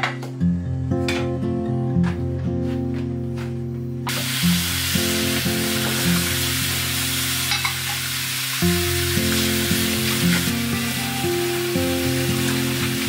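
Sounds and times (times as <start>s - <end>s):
background music: 0.0s - 7.5s, 8.6s - 13.0s
meat sizzling on grill: 4.1s - 13.0s.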